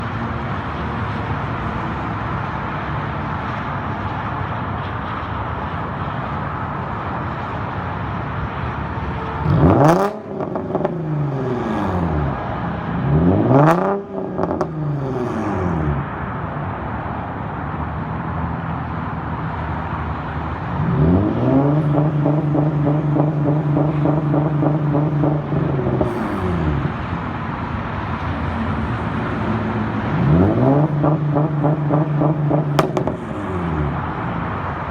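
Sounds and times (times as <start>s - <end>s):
car engine idling and revving: 0.0s - 34.9s
exhaust pops: 21.2s - 27.3s, 30.2s - 34.4s
engine stuttering on launch control: 21.2s - 27.4s.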